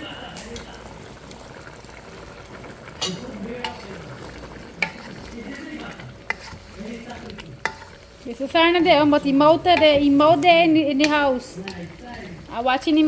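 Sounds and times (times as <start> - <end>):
curry sizzling: 0.0 - 13.0
spoon stirring a pot: 2.6 - 13.0
spoon knocking against pot: 9.0 - 12.4.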